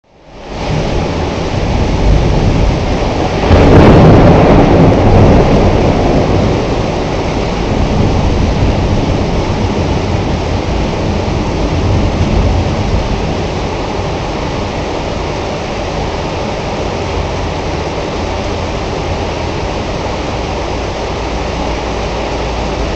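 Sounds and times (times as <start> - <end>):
heavy rain falling: 0.0 - 22.9
thunder rumbling: 0.4 - 22.9.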